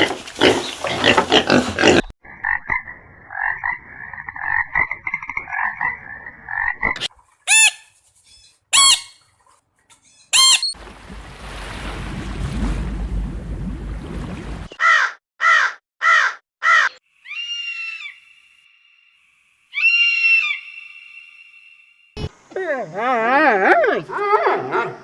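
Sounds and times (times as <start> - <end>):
pulsing croaking animal call: 2.0 - 7.0.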